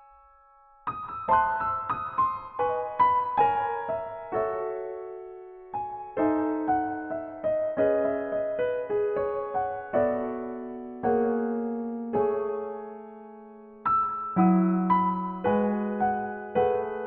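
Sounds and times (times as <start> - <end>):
gentle piano music: 0.0 - 17.0.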